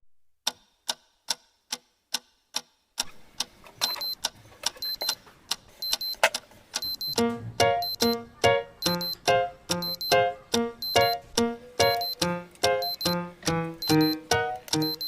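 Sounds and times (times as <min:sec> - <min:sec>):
clock ticking: 0:00.4 - 0:15.0
alarm clock beeping: 0:03.8 - 0:04.2, 0:04.8 - 0:05.2, 0:05.8 - 0:15.0
electronic beat: 0:06.8 - 0:15.0.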